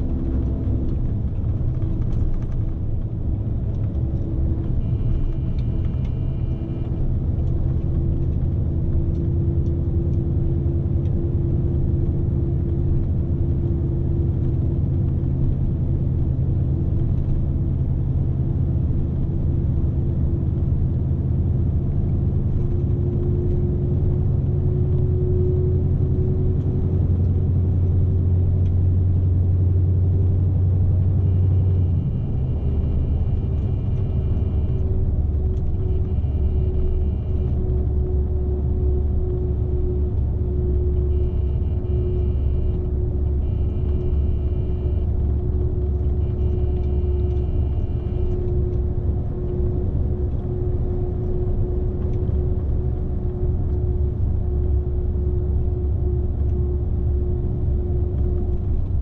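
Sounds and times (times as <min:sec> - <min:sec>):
truck diesel engine drone: 0:00.0 - 0:59.0
short high beep: 0:41.0 - 0:45.1.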